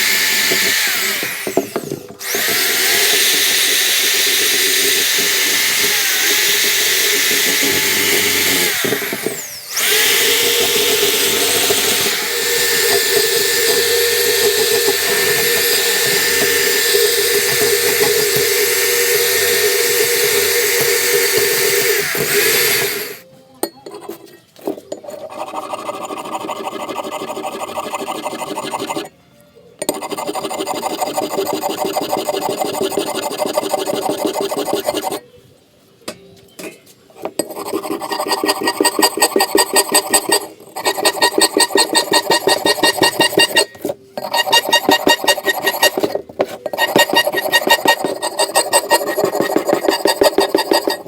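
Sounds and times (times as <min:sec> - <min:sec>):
motorised tool whirring: 0:00.0 - 0:23.2
rasping strokes: 0:00.0 - 0:23.2, 0:23.9 - 0:29.1, 0:29.8 - 0:35.3, 0:37.4 - 0:51.0.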